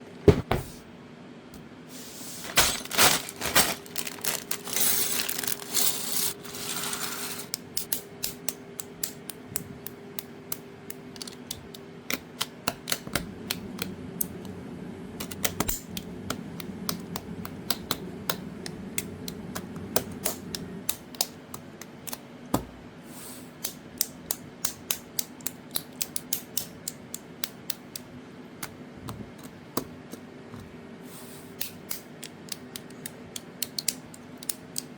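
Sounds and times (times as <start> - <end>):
plastic pieces rustling and clattering: 2.4 - 7.5.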